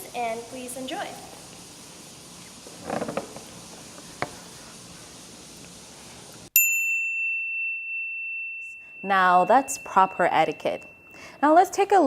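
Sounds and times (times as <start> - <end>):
bell-like ding: 6.6 - 11.6.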